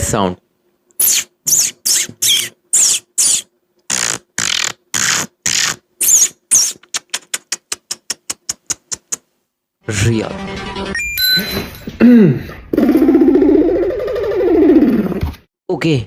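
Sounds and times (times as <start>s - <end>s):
mouth imitation of birdsong chirps: 1.0s - 4.6s, 5.6s - 8.5s.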